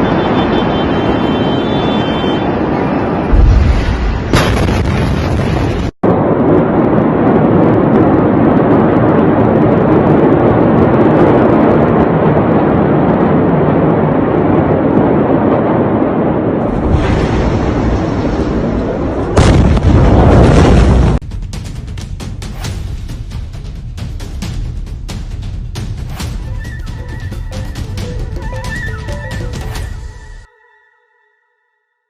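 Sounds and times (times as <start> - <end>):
loud blast: 0.0 - 9.3, 16.5 - 21.3
explosion and fire rumble: 0.1 - 26.5.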